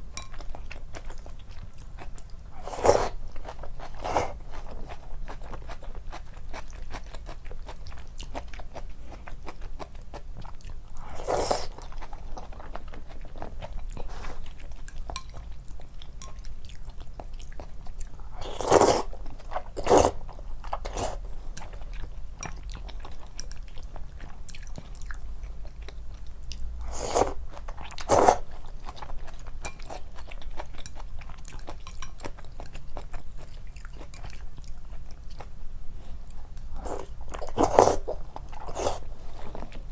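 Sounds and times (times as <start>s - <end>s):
chewing and biting food: 0.2s - 10.8s, 20.7s - 26.6s.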